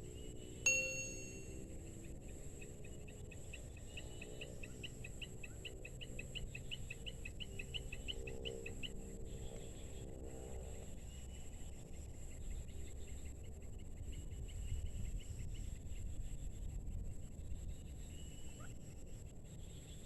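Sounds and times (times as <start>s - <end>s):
rising chirp: 0.7s - 1.5s.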